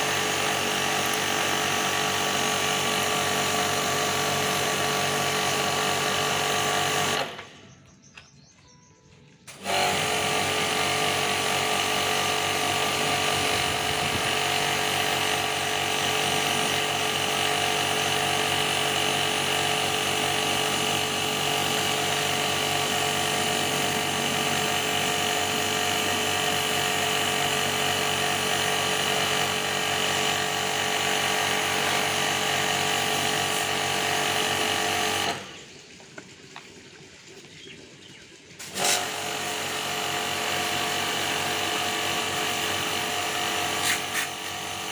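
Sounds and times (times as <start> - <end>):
small electric motor whining: 9.5 - 35.6.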